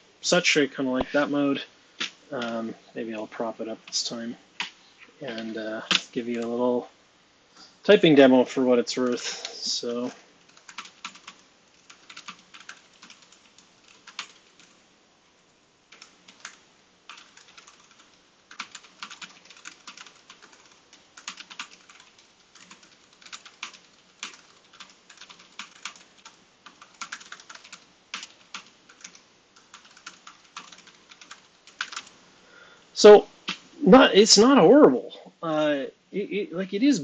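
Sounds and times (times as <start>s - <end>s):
mechanical keyboard typing: 10.4s - 14.8s, 15.9s - 32.1s.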